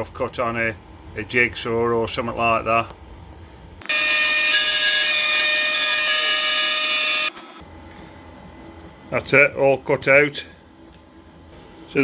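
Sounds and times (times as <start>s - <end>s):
router spindle whine: 3.8s - 7.7s.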